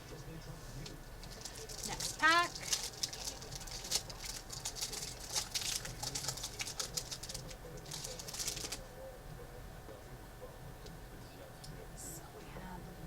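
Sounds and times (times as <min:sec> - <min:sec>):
card pack wrapper crinkling: 0:01.2 - 0:08.8.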